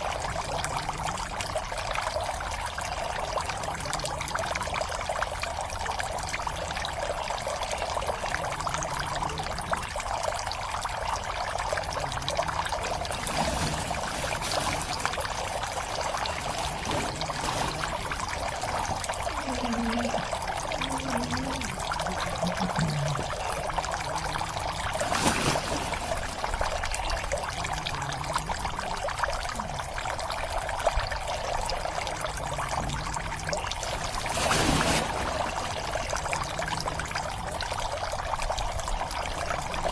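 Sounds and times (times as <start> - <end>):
water pouring into a pond: 0.0 - 39.9.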